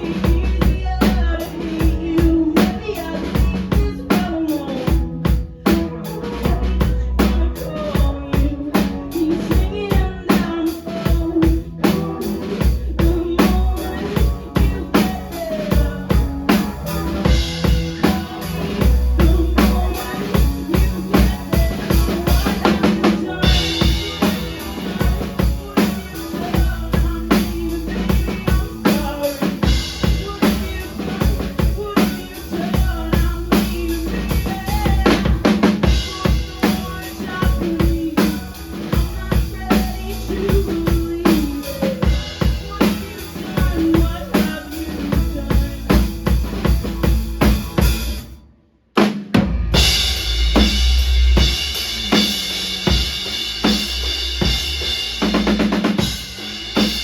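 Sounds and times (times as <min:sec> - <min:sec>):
drum kit kick and snare: 0:00.0 - 0:48.4, 0:49.0 - 0:57.0
live rock band playing: 0:00.0 - 0:57.0.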